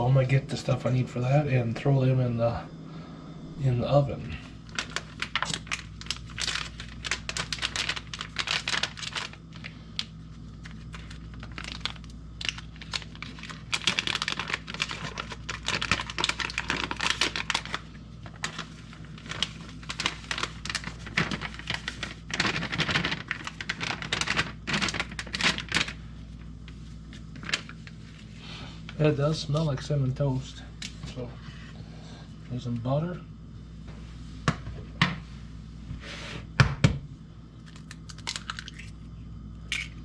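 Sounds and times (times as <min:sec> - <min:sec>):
pouch crinkling and tearing: 0:04.6 - 0:26.0.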